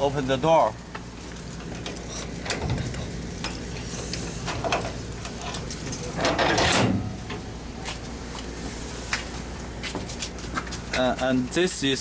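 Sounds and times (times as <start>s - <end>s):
steady low hum: 0.0s - 12.0s
metal door scraping: 2.0s - 7.2s
keys jangling in a lock: 5.3s - 6.4s.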